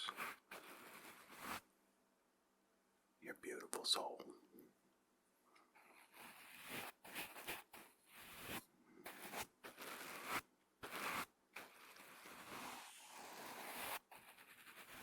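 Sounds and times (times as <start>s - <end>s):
brush stroking a microphone: 0.0s - 1.7s, 5.8s - 15.0s.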